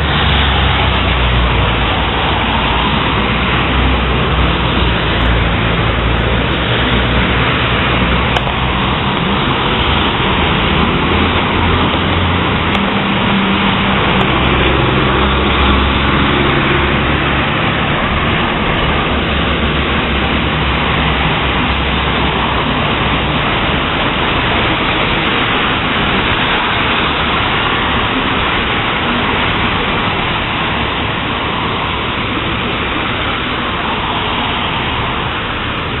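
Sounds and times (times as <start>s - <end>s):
heavy rain pouring: 0.0s - 36.0s
low thunder rumble: 0.0s - 36.0s.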